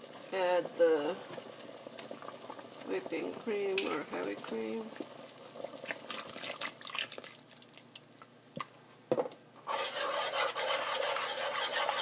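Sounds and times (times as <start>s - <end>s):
liquid dripping: 6.2s - 8.8s
spoon scraping a pot: 9.6s - 12.0s.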